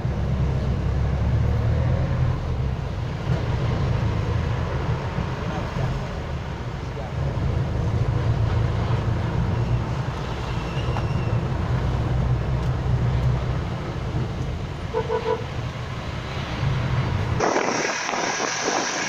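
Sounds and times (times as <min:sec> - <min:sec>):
diesel engine rumble: 0:00.0 - 0:19.0
road noise: 0:00.0 - 0:19.0
short horn beeps: 0:14.9 - 0:15.5
rain hiss: 0:15.6 - 0:19.0.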